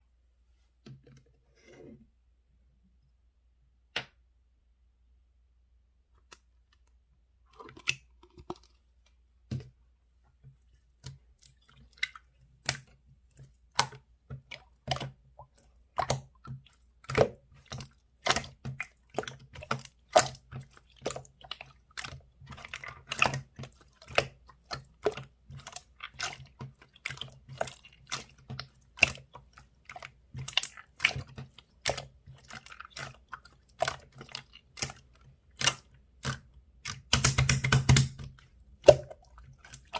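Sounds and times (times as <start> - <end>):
slime sticky clicks and pops: 36.9 - 38.2.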